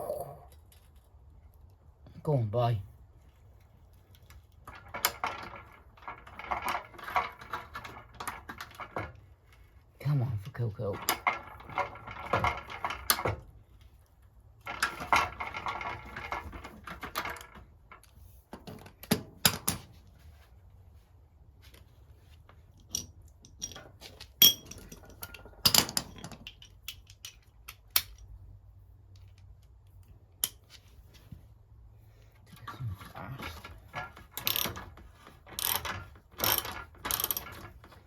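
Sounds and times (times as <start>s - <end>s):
socket wrench ratcheting: 34.2s - 37.8s.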